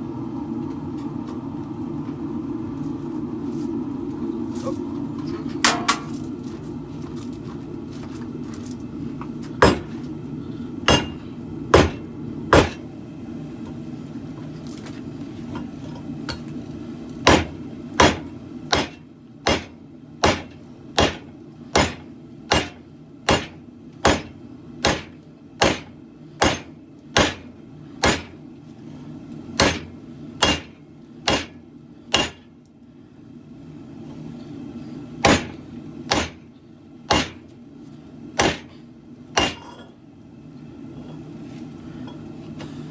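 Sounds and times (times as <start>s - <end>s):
hammer striking steel on anvil: 9.6s - 10.0s, 10.9s - 12.9s, 17.3s - 28.4s, 29.6s - 32.5s, 35.2s - 36.4s, 37.1s - 37.4s, 38.4s - 38.8s, 39.4s - 39.9s.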